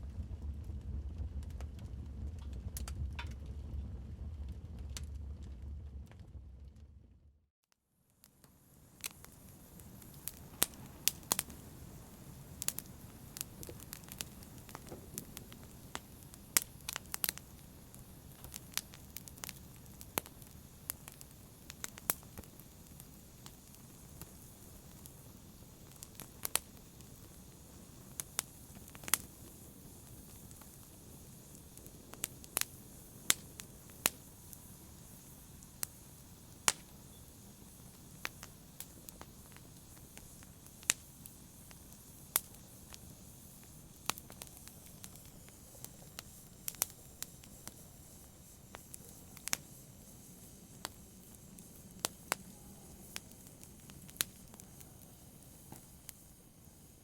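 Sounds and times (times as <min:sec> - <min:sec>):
wood fire crackling: 0:00.0 - 0:07.4, 0:08.1 - 0:57.0
low rush of flame: 0:00.0 - 0:07.5, 0:08.2 - 0:57.0
sharp pops and snaps: 0:07.7 - 0:54.8, 0:55.4 - 0:56.2.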